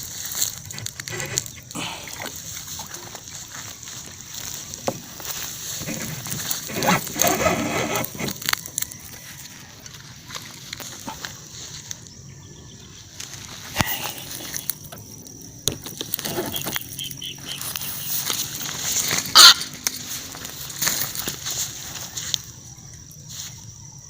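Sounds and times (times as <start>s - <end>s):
rustling: 0.0s - 12.1s, 13.2s - 22.6s.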